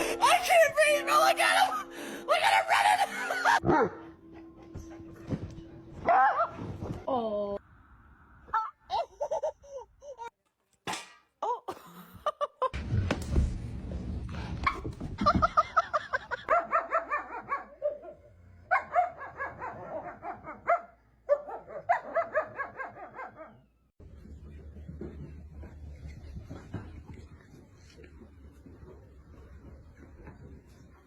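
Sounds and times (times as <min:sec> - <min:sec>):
dog barking rapidly: 0:16.5 - 0:18.1, 0:18.7 - 0:23.6.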